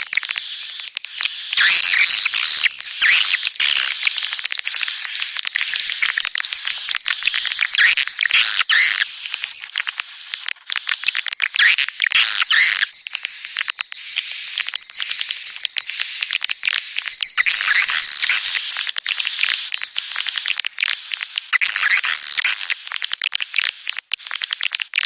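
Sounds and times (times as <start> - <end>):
swiftlets twittering: 0.2 - 25.0.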